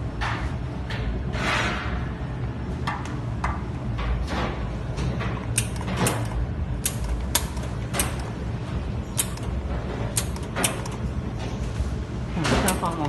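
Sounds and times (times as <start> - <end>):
laser welding machine humming: 5.3 - 13.0.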